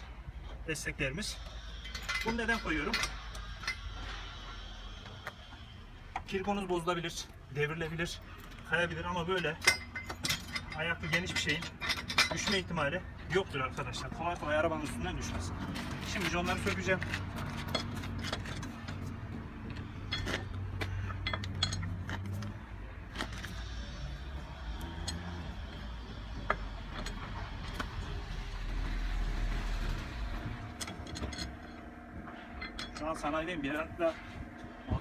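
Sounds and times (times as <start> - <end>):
low engine hum: 14.0 - 35.0.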